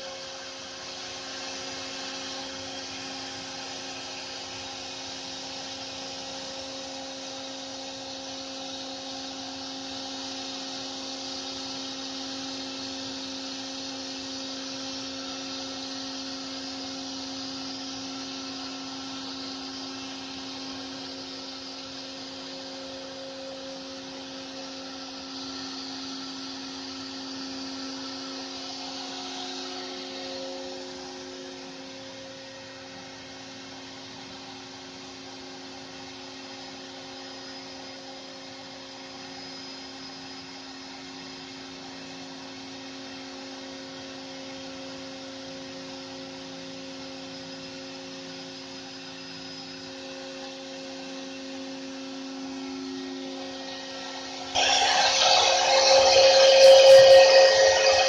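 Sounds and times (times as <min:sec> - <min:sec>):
cutting machine motor whine: 0:00.0 - 0:33.6, 0:50.8 - 0:58.0.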